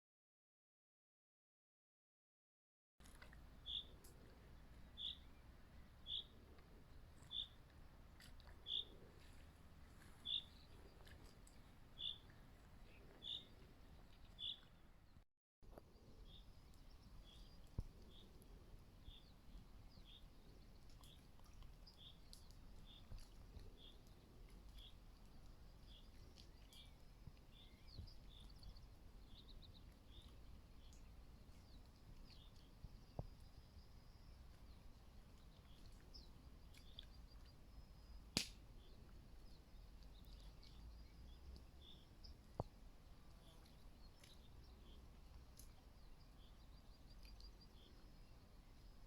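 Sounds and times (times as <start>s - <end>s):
small bird calling: 3.6s - 5.4s, 7.2s - 7.6s, 8.4s - 9.3s, 10.2s - 14.7s.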